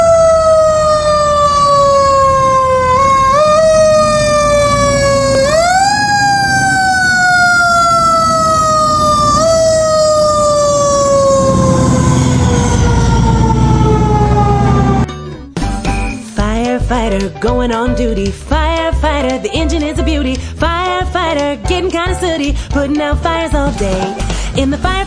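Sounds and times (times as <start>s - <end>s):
fire engine siren wailing: 0.0s - 15.1s
truck engine rumble: 0.0s - 15.1s.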